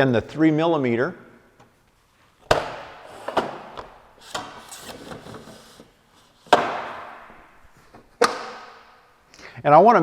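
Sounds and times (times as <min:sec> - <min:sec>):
metal and wood knocks: 0:06.5 - 0:07.3.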